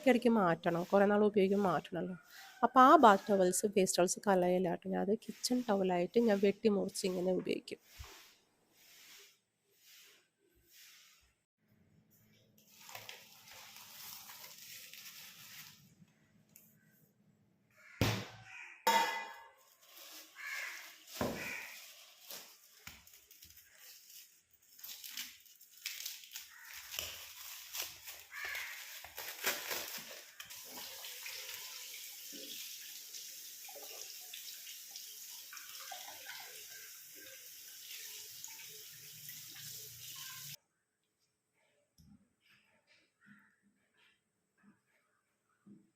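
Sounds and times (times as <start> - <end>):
water running: 29.7 - 40.6.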